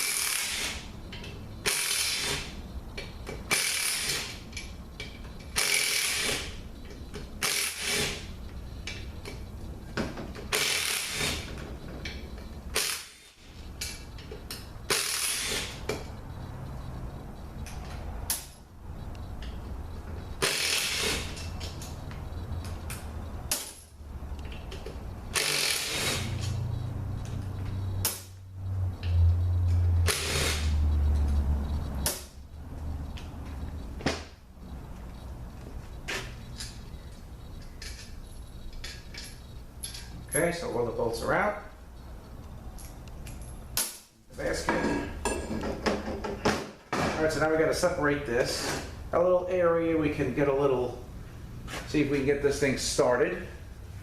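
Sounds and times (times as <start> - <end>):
ratchet clicking: 0.0 - 2.5, 3.5 - 4.7, 5.3 - 6.5, 7.4 - 8.2, 10.5 - 11.5, 12.7 - 15.8, 20.4 - 22.0, 23.5 - 28.3, 29.1 - 32.3.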